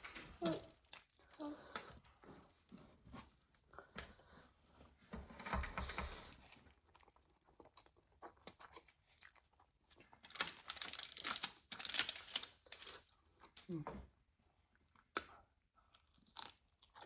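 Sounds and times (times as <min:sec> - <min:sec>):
chewing and mouth noises: 0:06.2 - 0:10.4.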